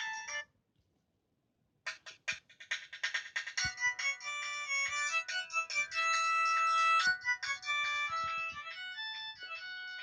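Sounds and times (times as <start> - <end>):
polyphonic ringtone melody: 0.0 - 0.5, 3.5 - 10.0.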